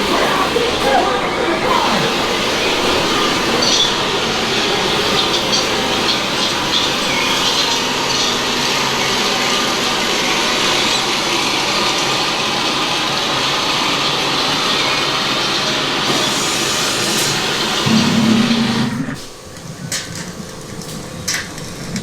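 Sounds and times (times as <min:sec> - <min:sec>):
high-pitched squeals: 0:00.0 - 0:09.6
ride car rumbling on track: 0:00.0 - 0:22.0.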